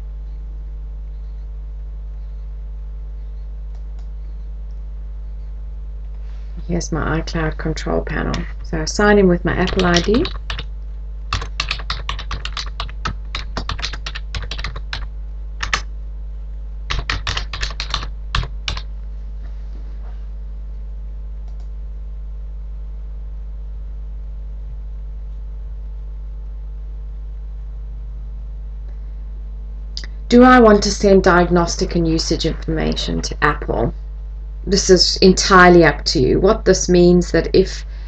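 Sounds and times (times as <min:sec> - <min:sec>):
steady low hum: 0:00.0 - 0:38.0
keyboard typing: 0:08.1 - 0:08.8, 0:09.6 - 0:10.7, 0:11.3 - 0:15.9, 0:16.9 - 0:18.9.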